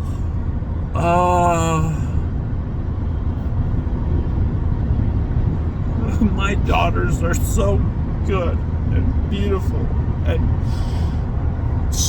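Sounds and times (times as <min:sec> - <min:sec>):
car cabin road rumble: 0:00.0 - 0:12.0
man saying ohh: 0:01.0 - 0:02.2.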